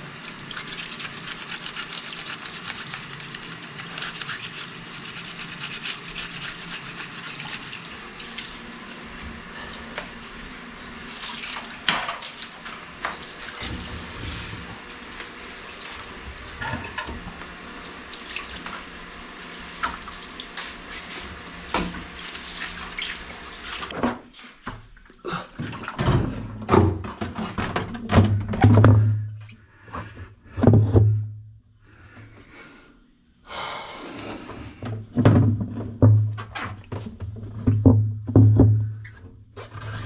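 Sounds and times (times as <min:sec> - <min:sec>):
water running: 0:00.0 - 0:23.9
knocks and clatter: 0:35.2 - 0:38.9.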